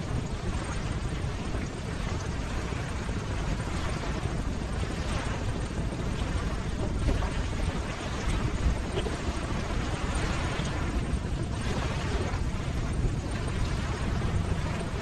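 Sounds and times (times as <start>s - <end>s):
ocean surf: 11.6s - 15.0s.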